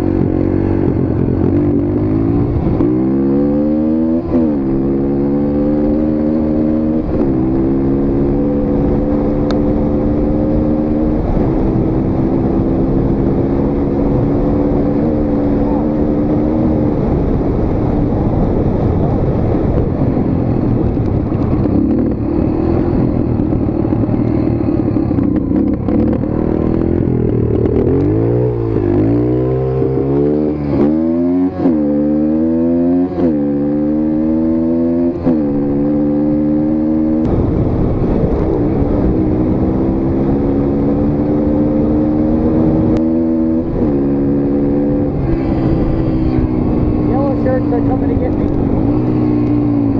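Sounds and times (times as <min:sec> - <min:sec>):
dirt bike engine revving: 0:39.6 - 0:49.9.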